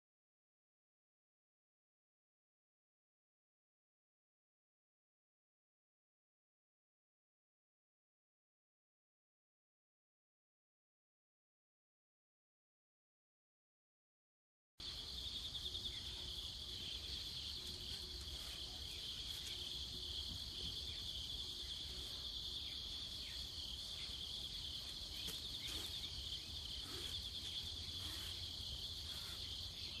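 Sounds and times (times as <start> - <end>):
insects trilling: 14.8 - 30.0.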